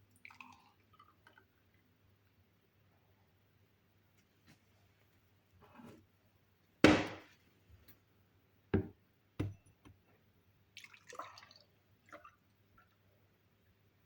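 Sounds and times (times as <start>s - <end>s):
kitchenware knocking: 8.8s - 9.6s.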